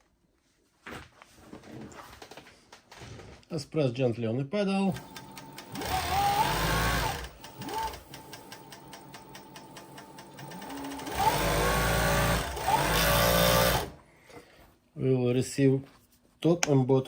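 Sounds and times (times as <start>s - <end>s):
sewing machine stitch ticks: 4.9s - 13.9s
sewing machine motor: 4.9s - 14.0s.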